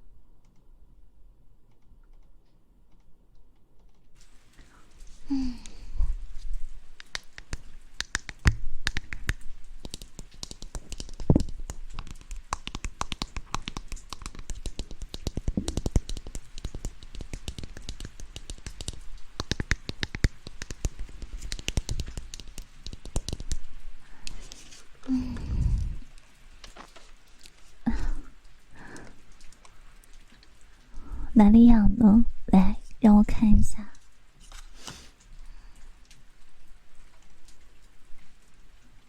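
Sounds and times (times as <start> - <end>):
tapping and scratching: 5.0 - 24.9.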